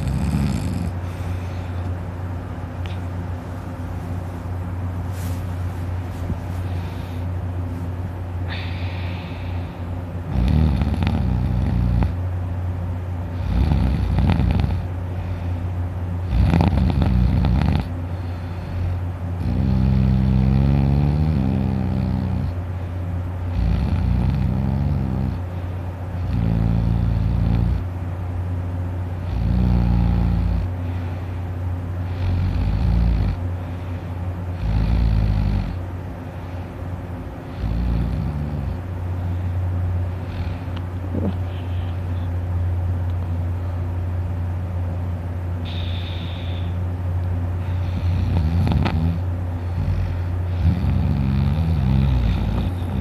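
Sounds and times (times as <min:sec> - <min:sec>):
man snoring: 0:00.0 - 0:01.4, 0:08.5 - 0:12.2, 0:13.3 - 0:14.9, 0:16.2 - 0:22.6, 0:23.5 - 0:25.5, 0:26.2 - 0:27.9, 0:29.2 - 0:30.8, 0:32.0 - 0:33.4, 0:34.5 - 0:35.8, 0:37.5 - 0:38.8, 0:40.2 - 0:41.4, 0:45.6 - 0:46.8, 0:47.7 - 0:53.0.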